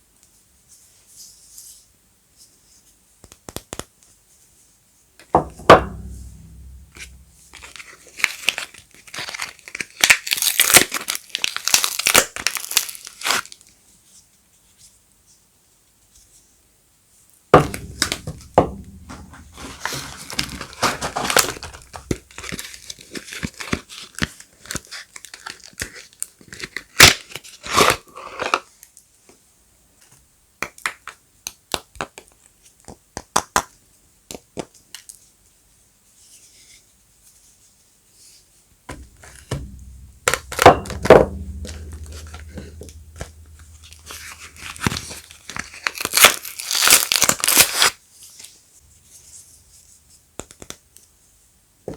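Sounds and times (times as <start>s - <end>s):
wrappers crinkling and tearing: 8.4s - 13.6s, 44.4s - 48.0s.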